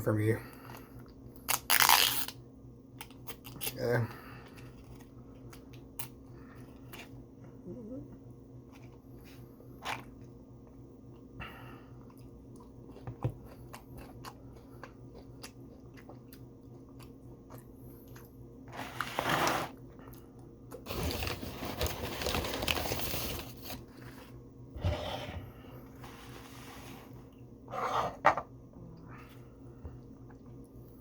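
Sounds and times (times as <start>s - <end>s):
person chewing: 11.9s - 18.4s
food crunching: 12.0s - 18.4s.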